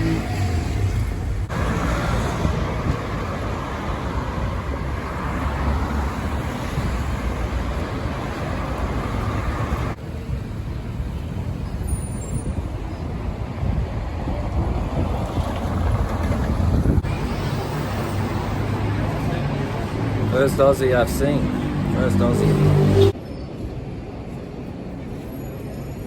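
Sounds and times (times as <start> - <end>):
passing cars and buses: 0.0 - 26.0.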